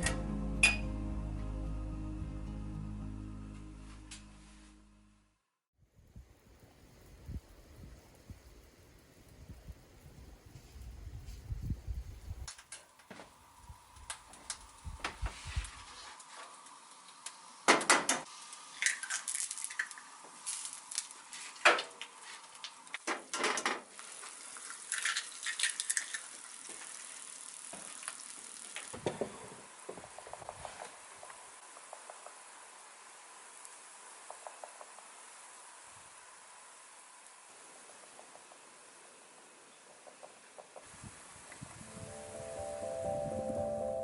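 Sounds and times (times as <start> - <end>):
small hard objects clattering: 18.8 - 21.6, 23.4 - 29.1.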